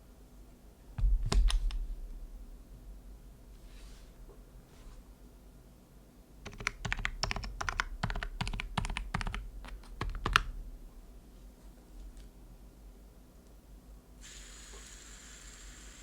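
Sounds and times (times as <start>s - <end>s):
typing on mechanical keyboard: 6.4s - 10.6s.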